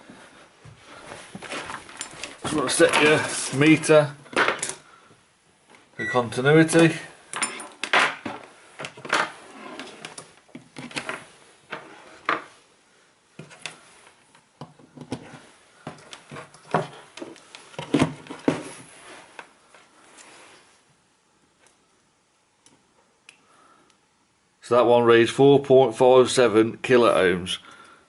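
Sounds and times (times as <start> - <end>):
soft rustling: 0.0 - 4.0, 15.2 - 21.9.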